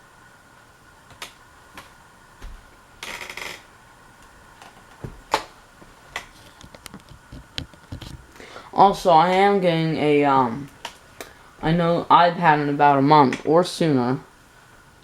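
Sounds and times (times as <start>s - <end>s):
fan hum: 0.0s - 15.0s.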